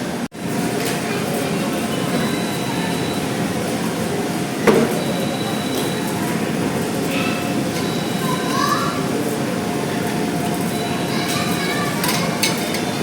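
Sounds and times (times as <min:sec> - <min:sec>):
indoor play centre din: 0:00.0 - 0:13.0
sharp knock: 0:04.7 - 0:05.2.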